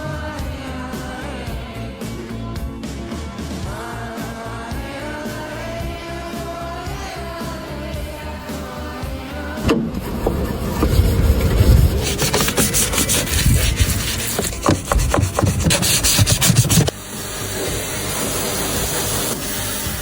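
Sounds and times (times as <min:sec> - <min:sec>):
rasping scraping strokes: 0:10.0 - 0:17.0
steady hiss: 0:12.0 - 0:20.0.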